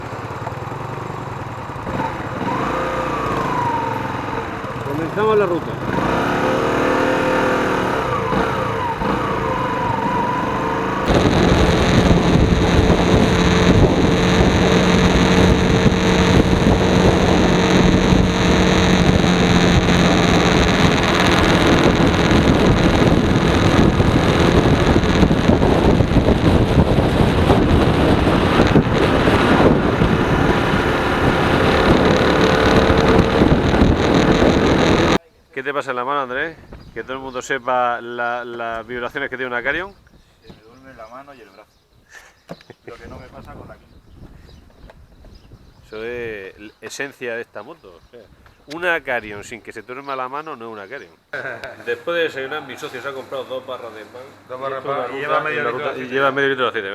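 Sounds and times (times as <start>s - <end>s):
motorcycle engine running: 0.0s - 35.2s
rush of wind: 1.8s - 35.2s, 43.0s - 46.3s.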